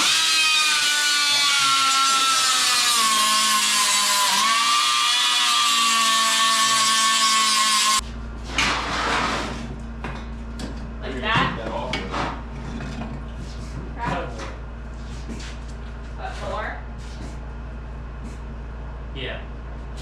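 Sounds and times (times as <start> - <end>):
angle grinder on metal: 0.0 - 8.0.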